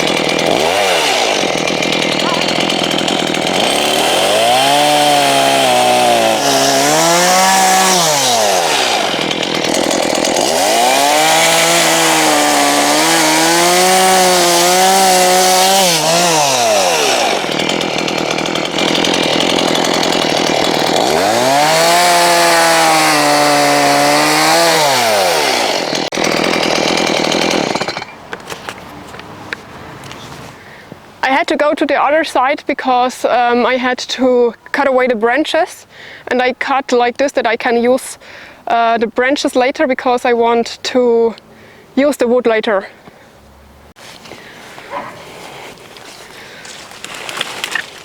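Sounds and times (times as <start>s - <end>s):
chainsaw cutting branches: 0.0s - 28.9s, 43.9s - 48.0s.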